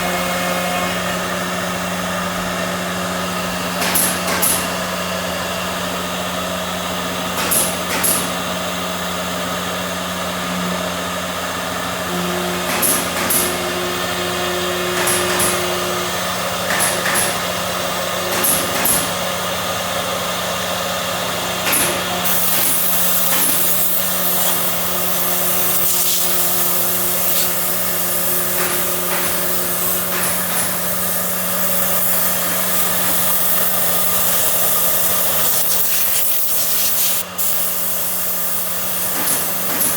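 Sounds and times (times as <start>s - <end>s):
cnc machine motor hum: 0.0s - 3.7s, 8.5s - 18.4s
cutter hissing through material: 21.6s - 39.9s
short hissing bursts: 22.3s - 39.9s.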